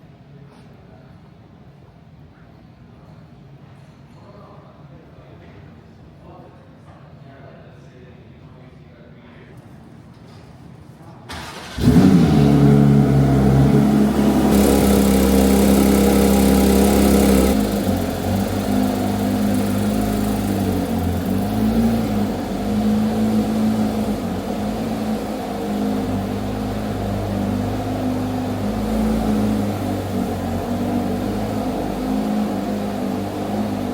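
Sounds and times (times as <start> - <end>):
car engine starting and idling: 11.3 - 33.9.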